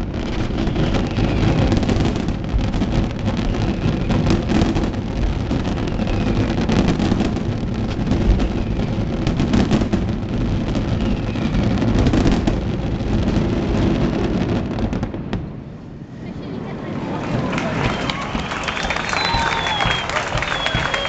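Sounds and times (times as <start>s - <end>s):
fireworks booms and crackling: 0.0s - 21.0s
falling firework whistles: 0.2s - 2.4s, 3.4s - 4.9s, 5.6s - 7.4s, 8.1s - 9.9s, 10.7s - 12.5s, 17.8s - 21.0s.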